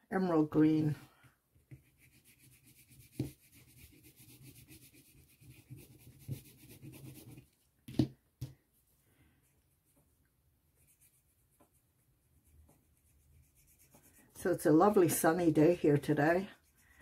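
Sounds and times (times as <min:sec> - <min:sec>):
pastel rubbing on card: 0:01.6 - 0:07.6, 0:10.8 - 0:17.0.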